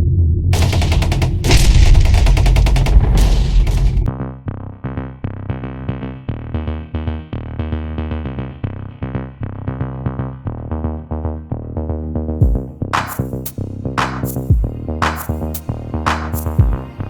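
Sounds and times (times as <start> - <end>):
electronic synthesizer music: 12.4 - 17.0.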